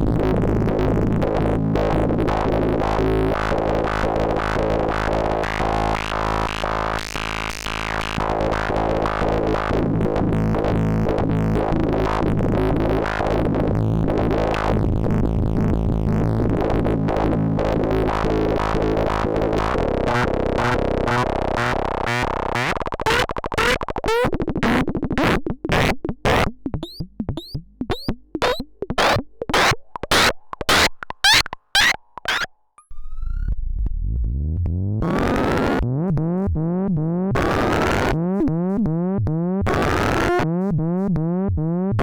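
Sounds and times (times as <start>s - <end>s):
synthesizer buzzing drone: 0.0s - 23.9s, 28.4s - 42.0s
synthesizer clicks and pulses: 18.1s - 42.0s.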